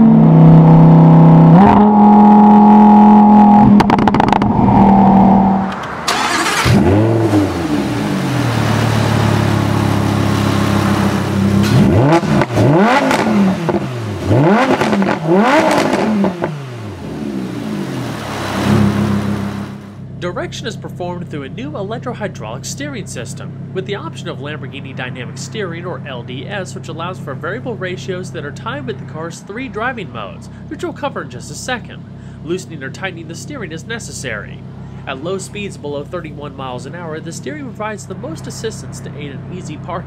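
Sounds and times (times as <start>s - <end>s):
sports car engine revving: 0.0s - 20.2s
exhaust crack: 0.0s - 40.0s.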